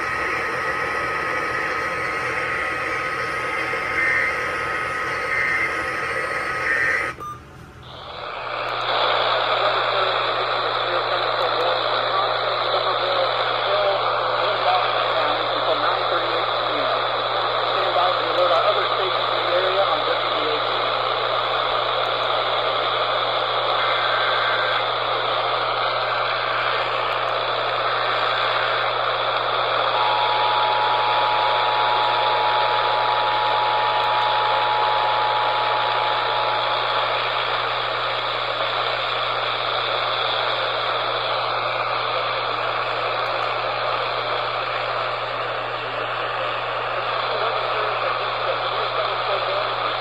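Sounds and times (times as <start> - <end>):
radio static hiss: 0.0 - 7.2, 7.9 - 50.0
two-tone attention signal: 0.0 - 8.0
low hum: 0.0 - 10.5
faint data bursts: 0.0 - 16.9, 23.6 - 41.7.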